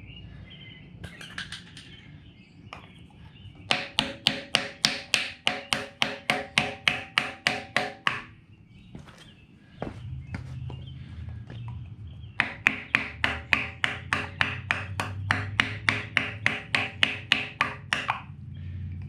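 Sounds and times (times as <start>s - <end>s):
hammer striking metal: 12.4s - 18.2s.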